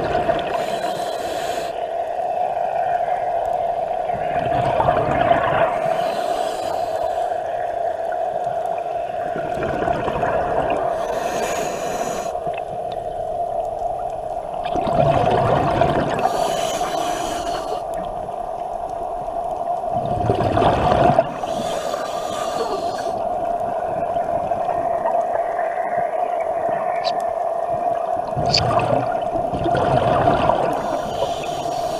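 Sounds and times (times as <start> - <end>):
gurgling exhaled bubbles: 0.0 - 0.9, 3.9 - 6.2, 9.0 - 11.2, 12.4 - 17.2, 19.8 - 31.9
hissing regulator inhalations: 0.4 - 1.8, 5.8 - 7.5, 10.9 - 12.4, 16.2 - 17.9, 21.4 - 23.2, 30.8 - 31.9.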